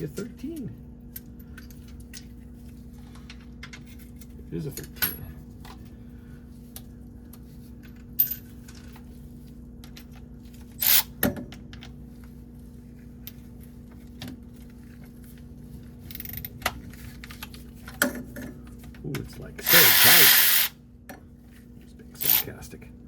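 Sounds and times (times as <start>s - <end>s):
socket wrench clicking: 19.7s - 20.7s.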